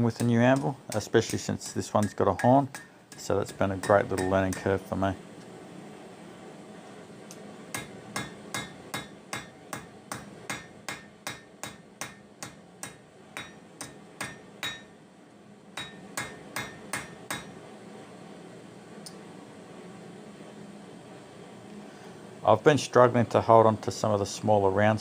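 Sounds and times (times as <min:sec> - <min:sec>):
hammer striking steel on anvil: 0:00.1 - 0:04.8, 0:07.7 - 0:15.0, 0:15.8 - 0:17.6.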